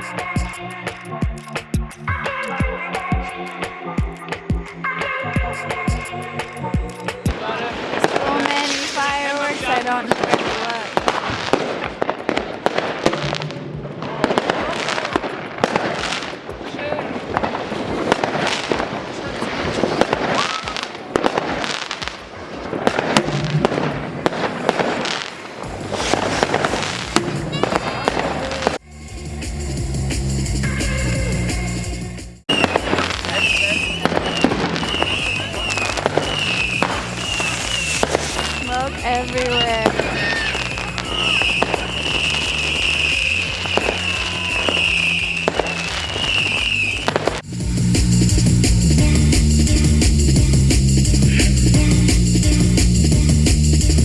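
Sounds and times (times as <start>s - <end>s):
background music with bass line: 0.0s - 8.2s, 25.7s - 54.0s
fireworks crackling: 0.0s - 54.0s
fireworks bangs: 2.2s - 28.8s, 32.5s - 50.1s
high whistle: 20.3s - 20.8s, 32.5s - 47.4s.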